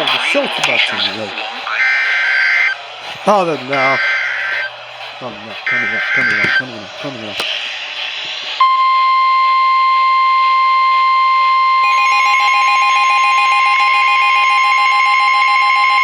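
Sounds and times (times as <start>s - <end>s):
steady warning tone: 0.0s - 16.0s
rapidly pulsing beep: 1.7s - 4.8s, 5.7s - 6.7s, 8.6s - 16.0s.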